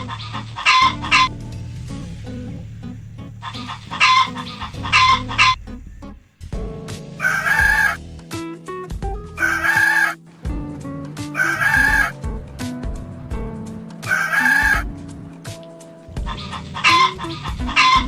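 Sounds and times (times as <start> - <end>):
rooster crowing: 0.0 - 6.2, 7.2 - 8.0, 9.4 - 10.2, 11.4 - 12.1, 14.1 - 14.9, 16.1 - 18.0.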